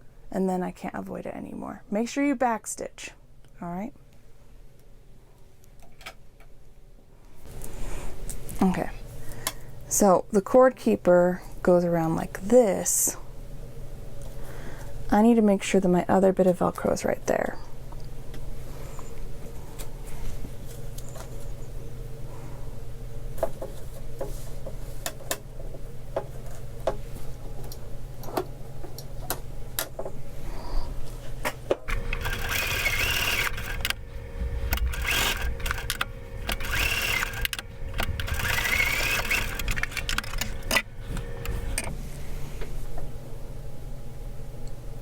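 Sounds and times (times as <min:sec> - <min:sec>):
sewing machine stitching: 0:31.9 - 0:41.8.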